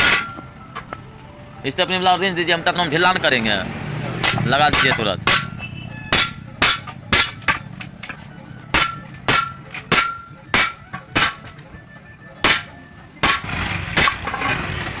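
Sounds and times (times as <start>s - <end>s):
hammering on metal wheel: 0.0s - 1.0s, 4.1s - 11.8s, 12.4s - 14.4s.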